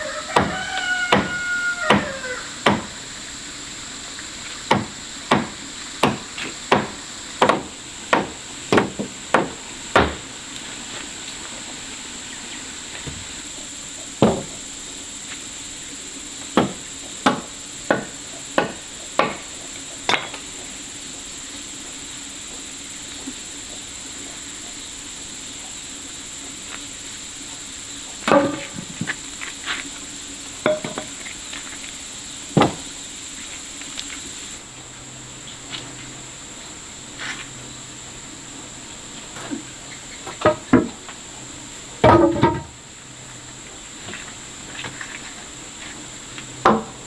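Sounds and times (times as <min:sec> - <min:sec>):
high insect drone: 0:00.0 - 0:47.0
hammer knocking on wood: 0:00.4 - 0:01.3, 0:04.7 - 0:10.2.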